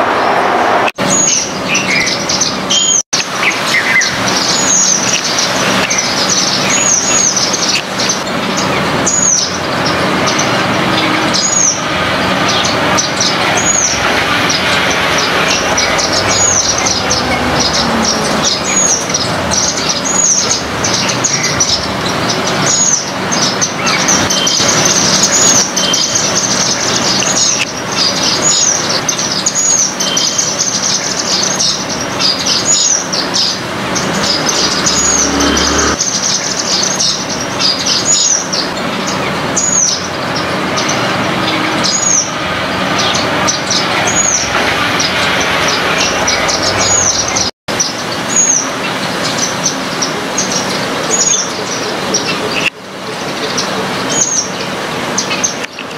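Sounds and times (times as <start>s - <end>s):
distant traffic rumble: 0.0s - 55.9s
small birds chirping: 1.0s - 55.9s
high hooked bird call: 34.0s - 37.0s.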